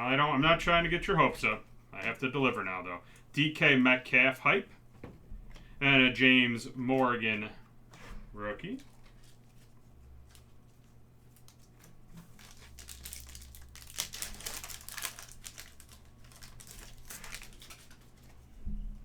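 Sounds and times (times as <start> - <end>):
foil wrapper crinkling: 8.6 - 18.6.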